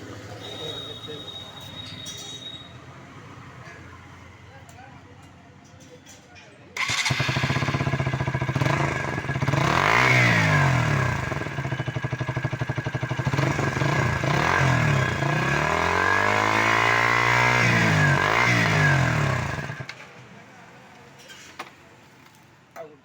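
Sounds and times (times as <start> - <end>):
motorcycle engine revving: 6.8 - 20.0.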